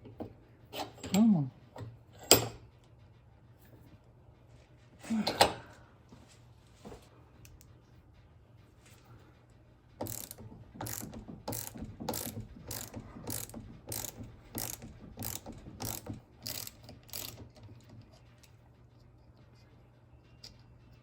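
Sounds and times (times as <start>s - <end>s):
socket ratchet clicking: 10.0s - 17.6s.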